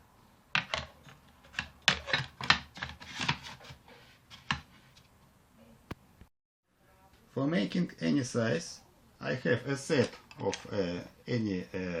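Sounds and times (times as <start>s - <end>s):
wood knocking and scraping metal: 0.6s - 5.0s.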